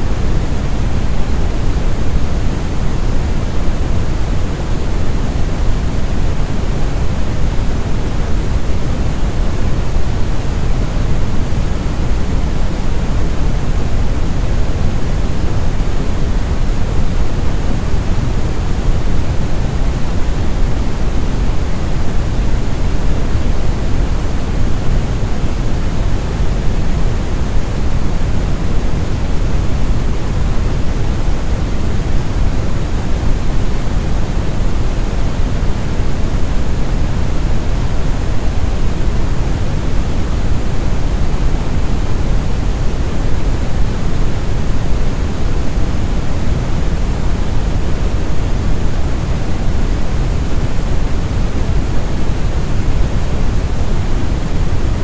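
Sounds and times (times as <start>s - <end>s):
deep brown noise rumbling hiss: 0.0s - 55.0s.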